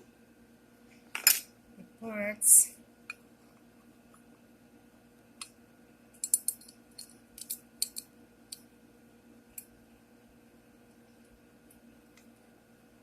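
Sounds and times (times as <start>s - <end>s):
small metal parts clinking: 6.2s - 8.1s.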